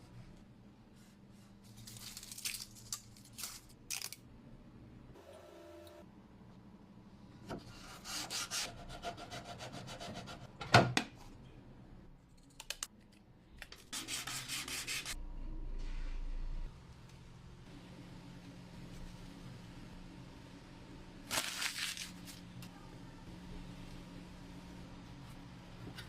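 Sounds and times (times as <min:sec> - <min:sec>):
steady low hum: 0:14.1 - 0:26.0.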